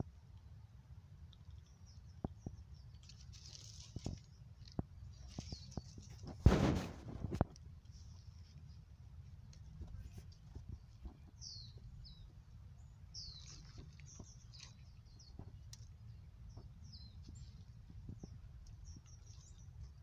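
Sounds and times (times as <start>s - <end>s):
low steady rumble: 0.0s - 20.0s
small bird chirping: 1.4s - 6.3s, 10.0s - 20.0s.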